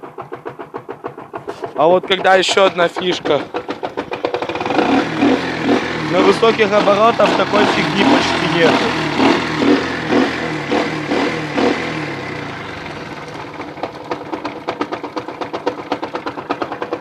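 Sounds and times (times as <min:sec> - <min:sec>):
engine knocking: 0:00.0 - 0:17.0
moped engine revving: 0:00.0 - 0:17.0.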